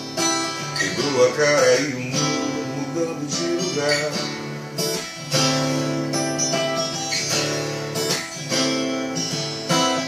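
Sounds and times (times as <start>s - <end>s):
acoustic guitar strumming: 0.0s - 10.0s
person singing: 0.7s - 4.5s.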